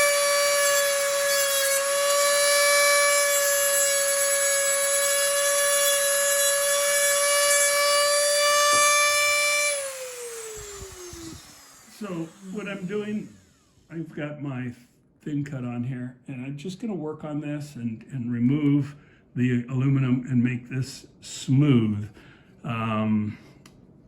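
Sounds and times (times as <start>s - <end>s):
rotary tool grinding metal: 0.0s - 13.9s
rotary tool spinning down: 8.4s - 13.9s.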